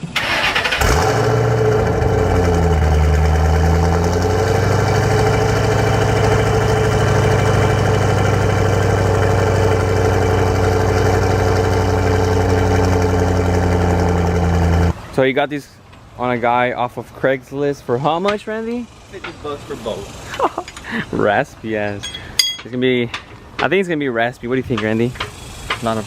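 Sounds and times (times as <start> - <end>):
car engine starting and idling: 0.0 - 15.1.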